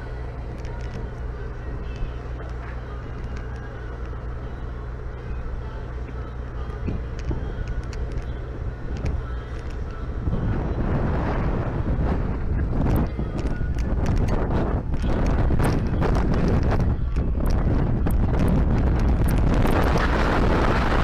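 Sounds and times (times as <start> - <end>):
boat engine hum: 0.0 - 21.0
faint clicks: 0.5 - 1.2, 1.8 - 4.2, 6.1 - 10.0, 12.9 - 16.0
wind buffeting microphone: 5.3 - 21.0.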